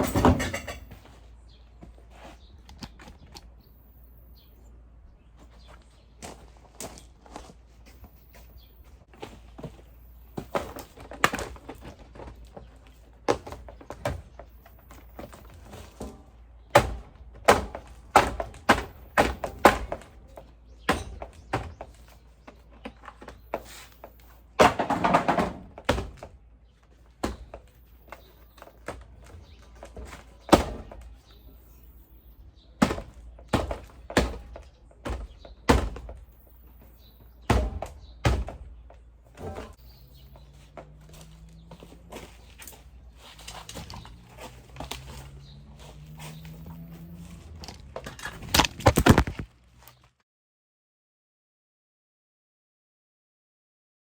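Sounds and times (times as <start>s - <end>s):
irregular knocks and thuds: 32.8s - 42.7s.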